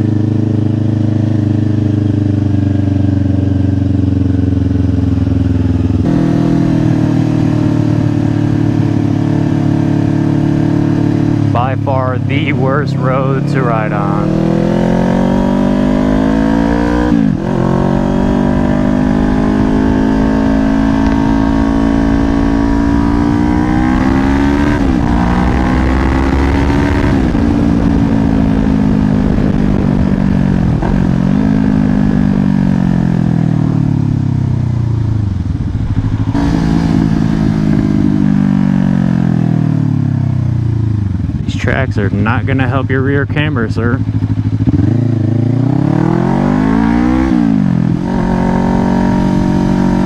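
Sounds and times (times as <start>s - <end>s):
motorcycle engine shifting gears: 0.0s - 50.0s
wind rumble on microphone: 14.3s - 39.5s.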